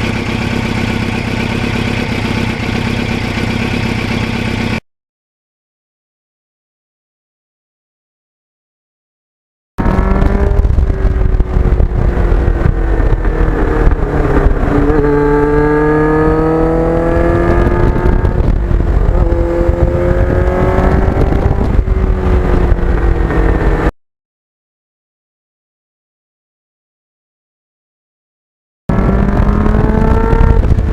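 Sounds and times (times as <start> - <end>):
motorcycle engine revving: 0.0 - 4.8, 9.8 - 23.9, 28.9 - 30.9
wind rumble: 9.8 - 23.9, 28.9 - 30.9.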